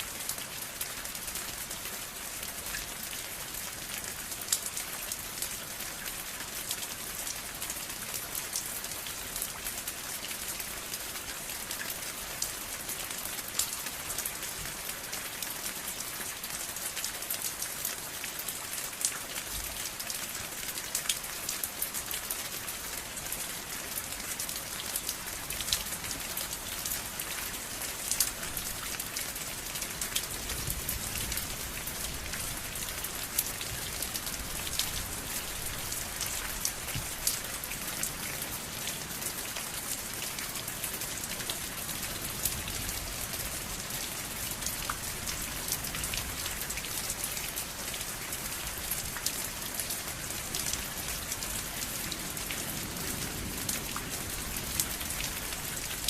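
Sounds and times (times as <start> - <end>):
rain falling: 0.0 - 56.0
raindrops tapping a surface: 32.2 - 38.2.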